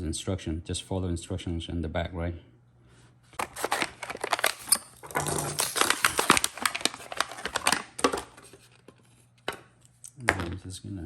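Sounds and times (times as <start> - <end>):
plastic packaging crinkling: 3.4 - 9.0.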